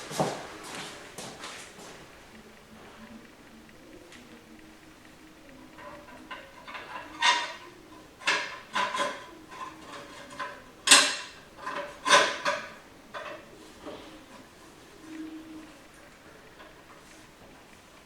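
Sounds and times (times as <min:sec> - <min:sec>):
metal parts clinking and clanking: 0:05.8 - 0:13.4.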